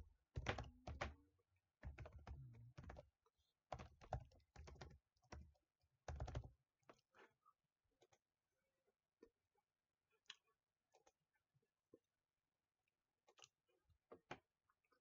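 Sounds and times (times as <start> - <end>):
computer keyboard typing: 0.0 - 1.2, 1.8 - 3.1, 3.7 - 5.5, 6.1 - 6.5.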